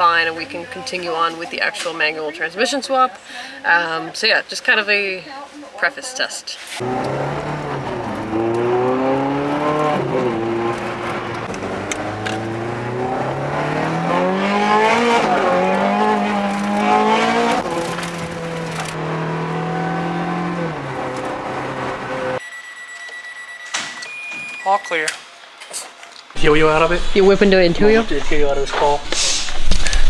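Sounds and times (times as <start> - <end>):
car engine revving and idling: 6.8 - 22.4.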